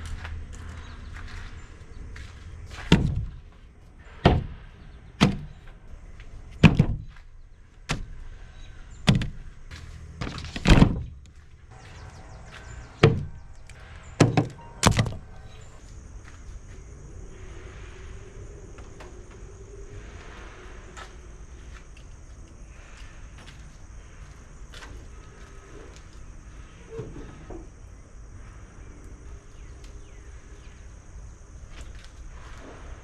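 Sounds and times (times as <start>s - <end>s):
objects knocking and thudding: 2.8s - 4.6s, 6.5s - 7.3s, 9.0s - 11.4s, 13.0s - 13.4s, 14.2s - 15.3s.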